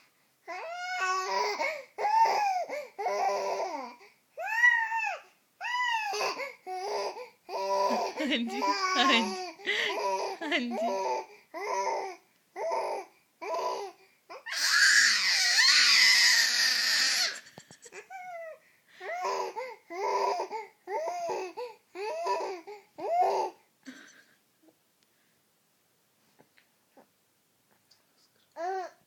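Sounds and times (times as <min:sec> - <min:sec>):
baby crooning: 0:00.5 - 0:23.6
baby raspy squeal: 0:00.6 - 0:12.8, 0:13.5 - 0:21.4.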